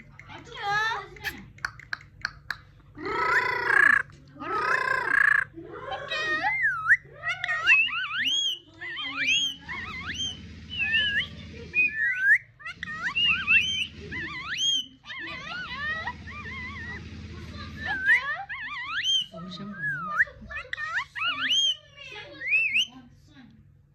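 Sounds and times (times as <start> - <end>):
parrot whistling: 6.5 - 22.9.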